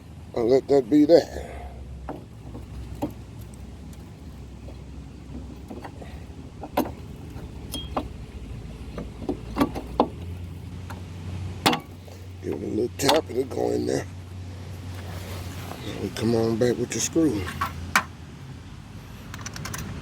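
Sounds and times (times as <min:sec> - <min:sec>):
steady low hum: 0:00.0 - 0:19.3
metallic clicks of brake caliper: 0:04.6 - 0:08.2, 0:19.3 - 0:20.0.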